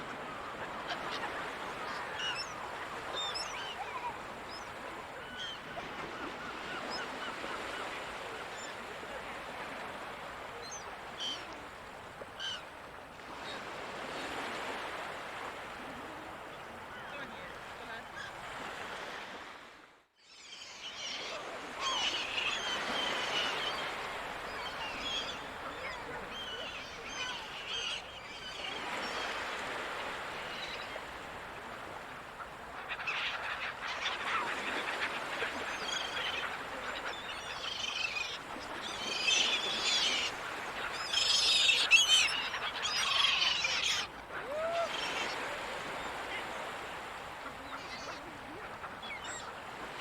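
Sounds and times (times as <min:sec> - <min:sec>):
seagulls calling: 0:00.0 - 0:09.0, 0:20.4 - 0:50.0.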